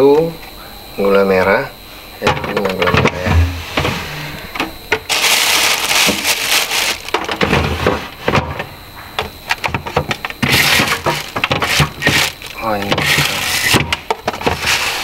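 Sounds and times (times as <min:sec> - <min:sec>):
packets rustling and crinkling: 0:02.6 - 0:08.8, 0:09.5 - 0:15.0.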